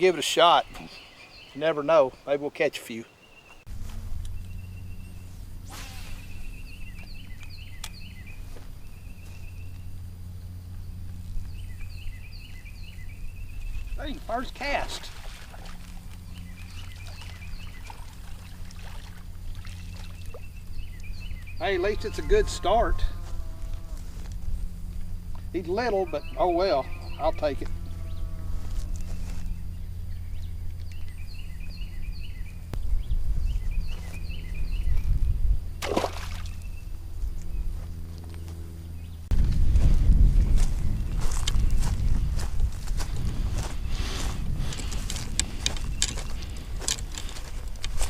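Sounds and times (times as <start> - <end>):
water splash: 14.8 - 16.1, 35.8 - 36.6
wind buffeting microphone: 22.3 - 37.8, 39.0 - 48.0.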